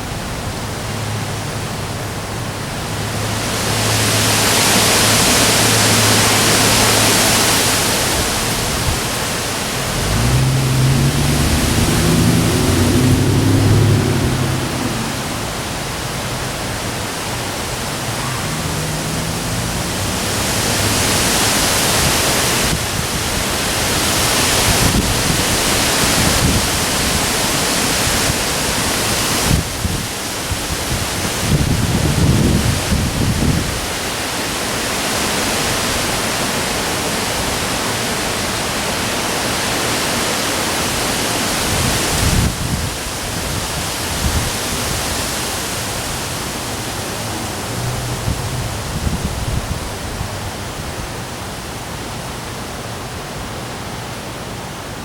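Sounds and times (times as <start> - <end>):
heavy rain: 0.0 - 55.0
strong wind gusts: 1.9 - 38.5, 40.8 - 51.7
low rumble: 9.7 - 21.9.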